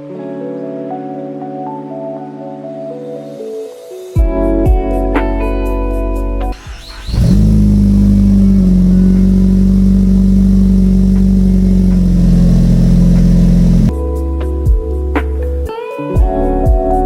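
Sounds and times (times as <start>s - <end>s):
car engine at high revs: 6.6s - 13.9s.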